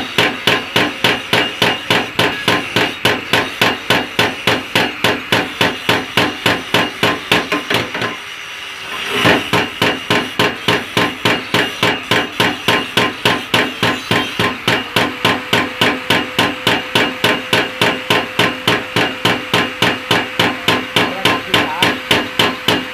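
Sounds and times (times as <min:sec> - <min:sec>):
power hammer striking metal: 0:00.0 - 0:08.2, 0:08.9 - 0:22.9.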